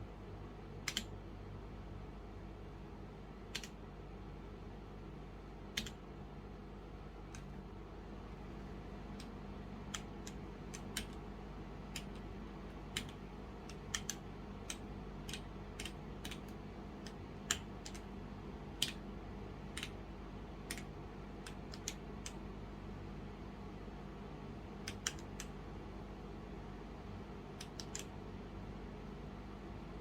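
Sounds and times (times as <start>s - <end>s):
mechanical keyboard key clicks: 0.8s - 1.1s, 3.5s - 3.8s, 12.9s - 18.1s, 27.6s - 28.1s.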